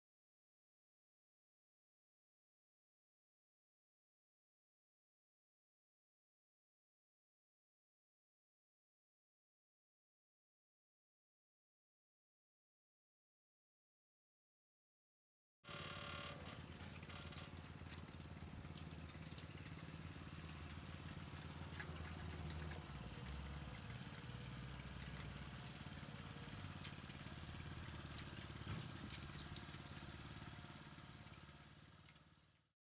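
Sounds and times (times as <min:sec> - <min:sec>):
small ticks: 0:15.7 - 0:32.6
engine running at low speed: 0:15.7 - 0:32.7.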